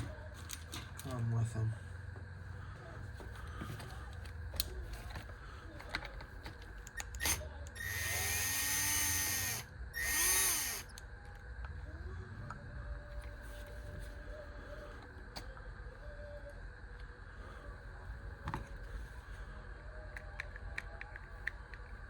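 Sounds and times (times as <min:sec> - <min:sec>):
power drill running: 0:07.0 - 0:11.0.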